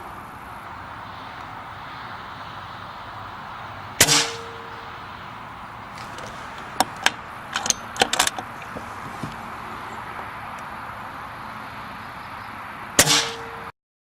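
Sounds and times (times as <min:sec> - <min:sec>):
air rifle shot: 0:04.0 - 0:05.0, 0:13.0 - 0:13.6.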